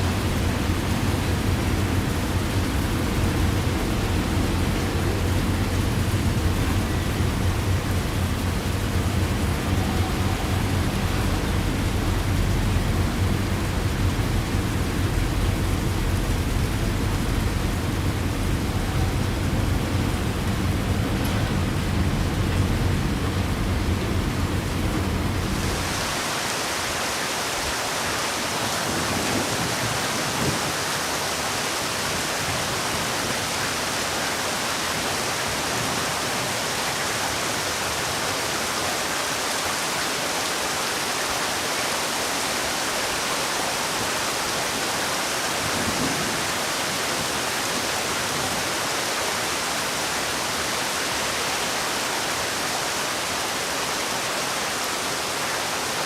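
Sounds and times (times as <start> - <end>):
low thunder rumble: 0.0 - 26.2
heavy rain falling: 0.0 - 56.0.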